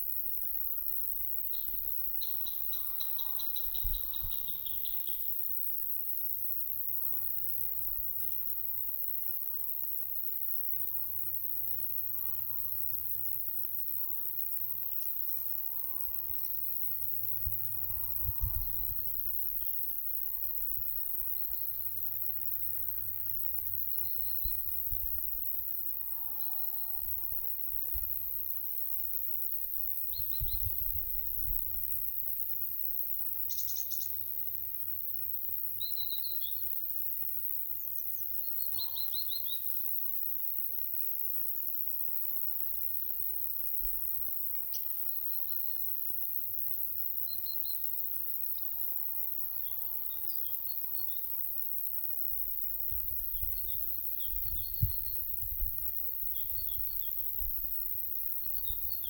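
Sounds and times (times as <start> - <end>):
songbirds chirping: 1.5 - 5.4.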